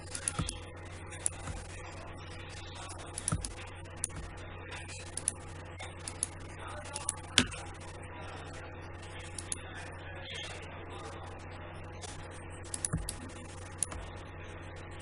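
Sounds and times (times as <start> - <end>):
computer mouse clicking: 0.0 - 1.8, 3.0 - 4.3, 4.9 - 7.9, 9.2 - 9.6, 12.1 - 14.1
low electrical hum: 0.0 - 15.0.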